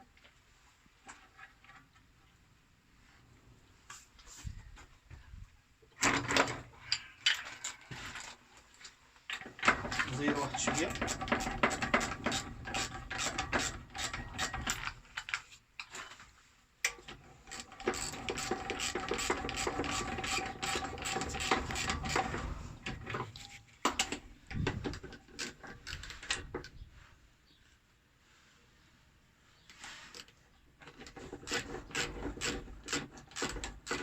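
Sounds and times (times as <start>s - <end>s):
ratchet clicking: 17.5s - 22.2s.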